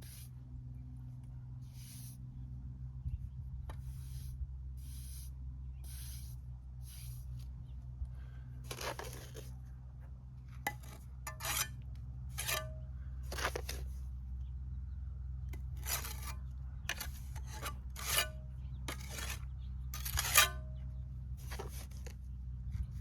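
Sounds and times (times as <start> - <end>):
steady low hum: 0.0 - 23.0
trowel scraping mortar on block: 8.7 - 9.5, 10.7 - 14.0, 15.8 - 20.8, 21.4 - 22.2.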